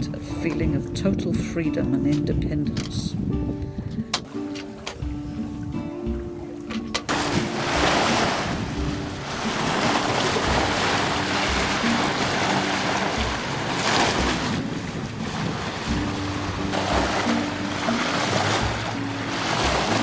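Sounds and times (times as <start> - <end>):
wind on microphone: 0.0 - 4.4, 7.1 - 17.4
sea water rushing along hull: 0.0 - 20.0.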